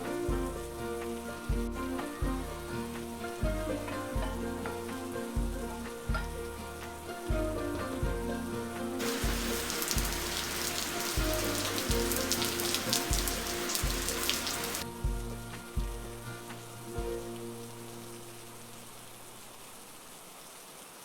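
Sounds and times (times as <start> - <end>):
background music with steady beat: 0.0 - 19.2
rain hissing and pattering: 0.0 - 21.0.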